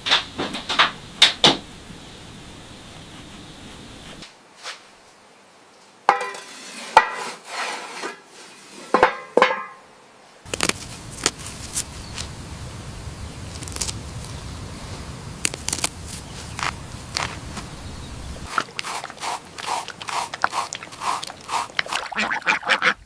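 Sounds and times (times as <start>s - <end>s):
steady hiss: 0.0s - 5.9s, 10.4s - 22.2s.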